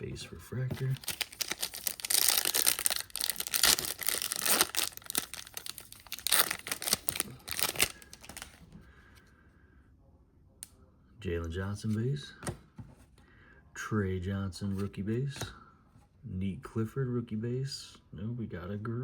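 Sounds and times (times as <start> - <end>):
foil wrapper tearing and crinkling: 1.0 - 8.6.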